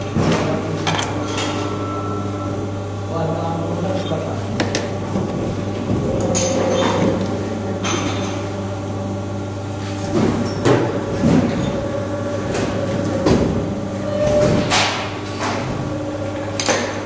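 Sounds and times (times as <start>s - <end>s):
hydraulic pump hum: 0.0s - 17.0s
machine clunks and clicks: 16.4s - 17.0s.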